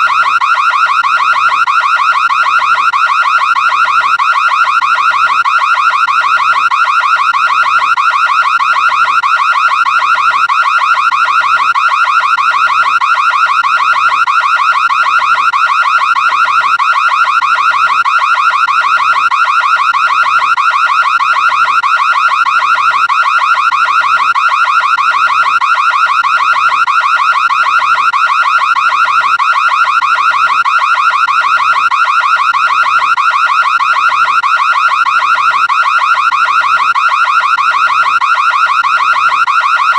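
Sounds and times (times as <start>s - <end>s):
warbling security alarm tone: 0.0s - 39.9s.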